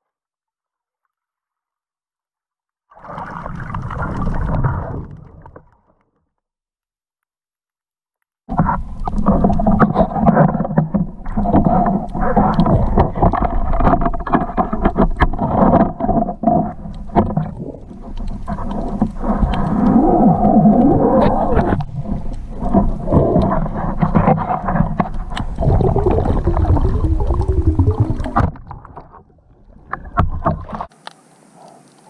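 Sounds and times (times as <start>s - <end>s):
water slapping against hull: 8.5s - 31.0s.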